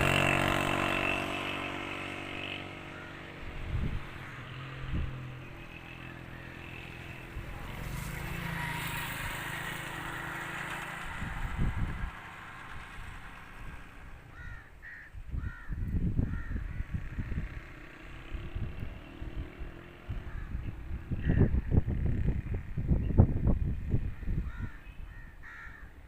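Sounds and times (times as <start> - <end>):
low engine-like hum: 2.6 - 14.8
bird calling: 14.3 - 17.0.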